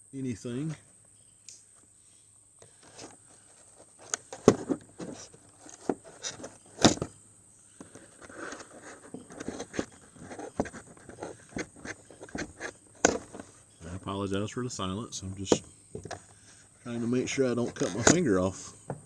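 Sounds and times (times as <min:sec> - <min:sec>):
packaging rustling and scraping: 0:02.6 - 0:14.0, 0:15.4 - 0:18.8
sharp clicks and knocks: 0:07.8 - 0:13.6.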